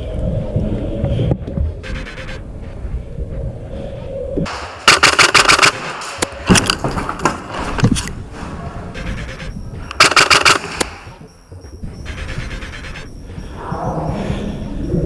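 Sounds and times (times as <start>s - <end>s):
airsoft gun firing: 4.5s - 6.8s, 9.0s - 11.1s.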